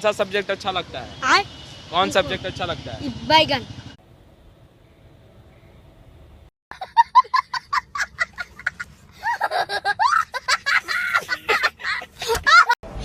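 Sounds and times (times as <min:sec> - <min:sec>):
person laughing hard: 0:06.7 - 0:12.8.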